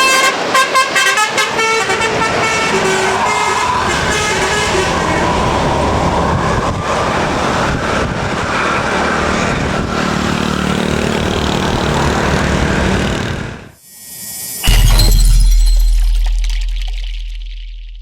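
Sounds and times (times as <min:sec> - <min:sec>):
multi-tone musical horn: 0:00.0 - 0:05.2
bus engine running: 0:00.0 - 0:13.8
road and traffic noise: 0:00.0 - 0:13.8.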